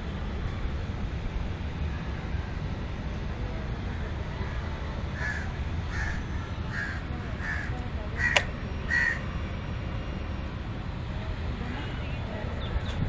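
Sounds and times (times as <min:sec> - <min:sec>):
low steady rumble: 0:00.0 - 0:13.0
crow cawing: 0:05.2 - 0:09.2
sharp click: 0:08.3 - 0:08.5.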